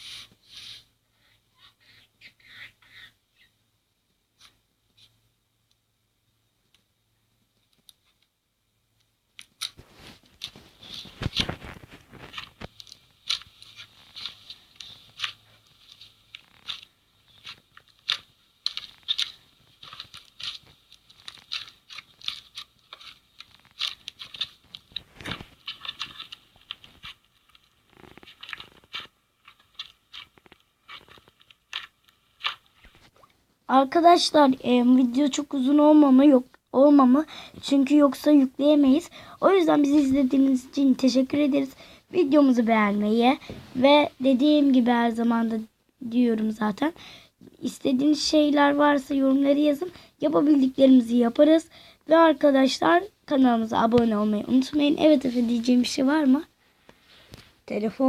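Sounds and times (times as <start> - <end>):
crunchy slime crackling: 9.5 - 33.2.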